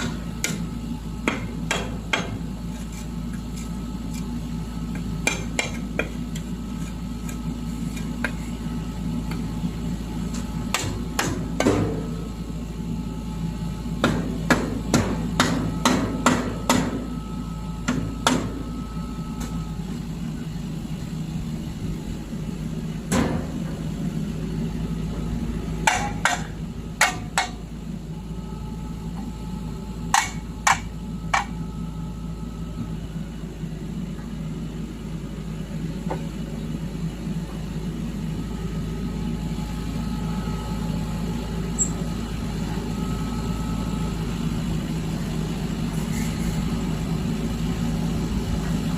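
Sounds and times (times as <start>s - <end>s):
low engine hum: 0.0s - 48.9s
hammer striking metal: 1.3s - 2.4s, 14.0s - 17.0s, 25.8s - 27.6s, 30.1s - 31.6s.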